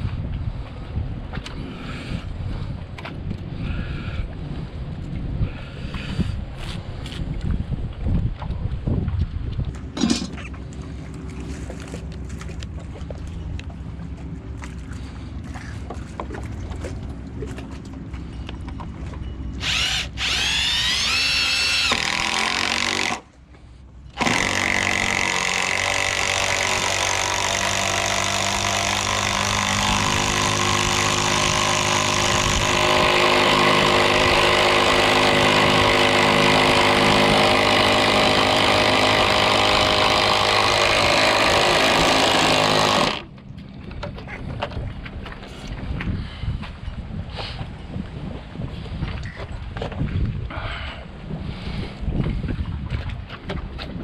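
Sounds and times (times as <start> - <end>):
power tool whining on wood: 19.6 - 23.3, 24.2 - 43.3.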